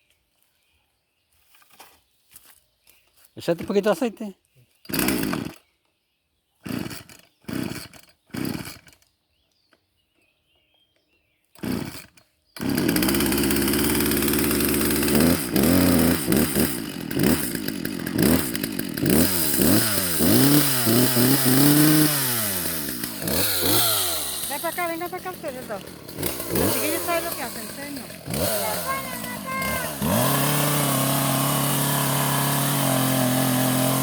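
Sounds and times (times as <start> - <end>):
chainsaw pull-started and revving: 4.8 - 5.7, 6.6 - 9.1, 11.5 - 34.0.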